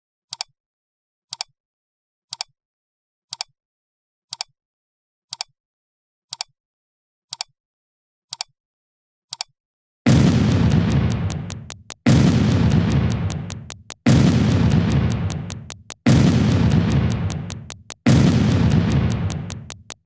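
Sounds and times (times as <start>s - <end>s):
loud blast: 10.1s - 19.8s
sharp double clicks: 10.1s - 20.0s.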